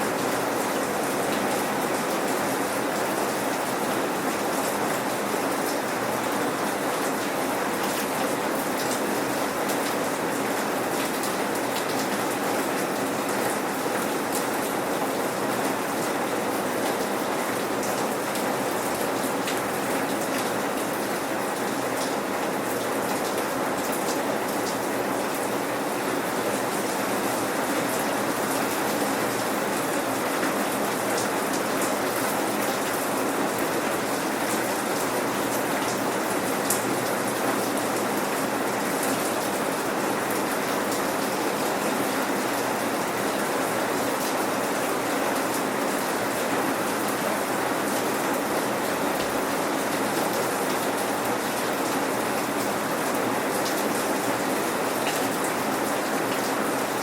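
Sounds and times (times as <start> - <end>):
steady rain patter: 0.0 - 57.0.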